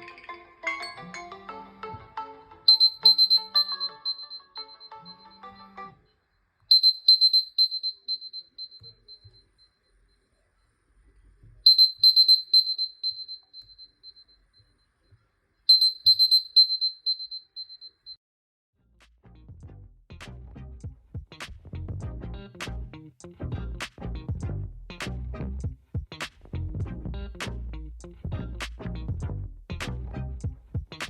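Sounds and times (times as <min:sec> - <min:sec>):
melodic ringtone: 0:00.0 - 0:06.0
rapid high-pitched alarm beeps: 0:02.7 - 0:04.9, 0:06.7 - 0:10.0, 0:11.7 - 0:14.4, 0:15.7 - 0:18.0.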